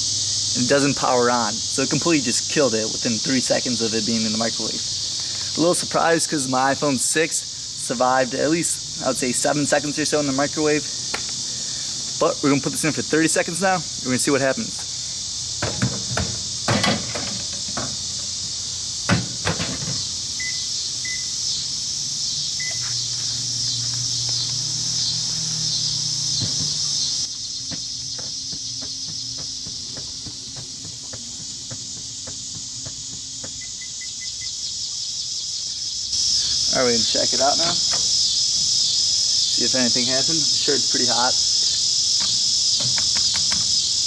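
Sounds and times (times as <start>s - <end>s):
crickets chirping: 0.0s - 44.0s
microwave door clicks and knocks: 15.6s - 18.0s, 19.1s - 20.0s.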